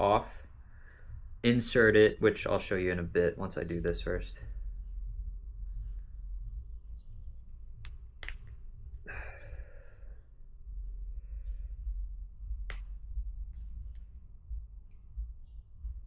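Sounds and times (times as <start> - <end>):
wire stripper clicking and snipping: 7.8 - 8.6, 12.7 - 13.2
person sighing: 9.1 - 10.2.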